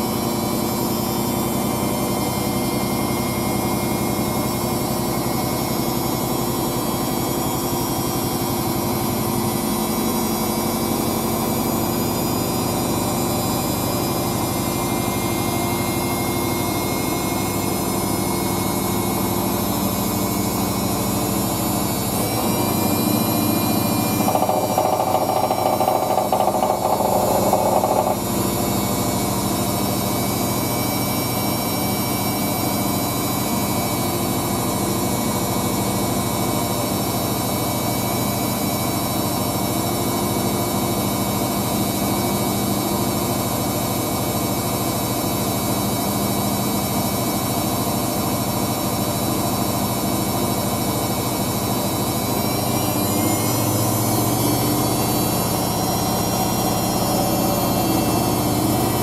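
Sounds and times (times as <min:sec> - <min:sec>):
washing machine spinning: 0:11.4 - 0:46.2, 0:46.8 - 0:59.0.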